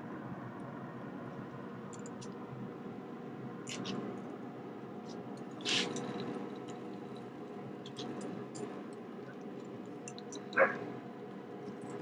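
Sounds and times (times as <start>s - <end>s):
faint background hum: 0.0s - 12.0s
short scrape: 5.6s - 6.0s.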